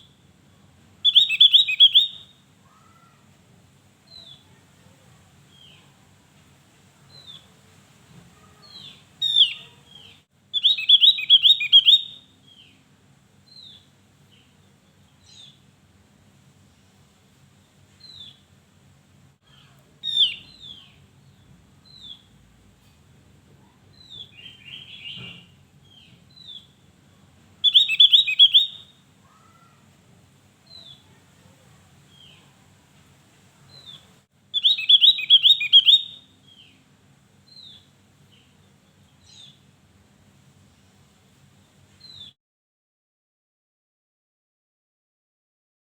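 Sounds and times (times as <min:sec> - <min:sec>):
rapid repeated bird notes: 0:01.0 - 0:02.3, 0:09.2 - 0:12.4, 0:27.6 - 0:28.9, 0:34.6 - 0:36.3
bird chirping: 0:01.0 - 0:03.1, 0:08.6 - 0:12.8, 0:18.0 - 0:18.5, 0:20.0 - 0:22.3, 0:23.9 - 0:26.8, 0:27.6 - 0:29.7, 0:33.7 - 0:36.8.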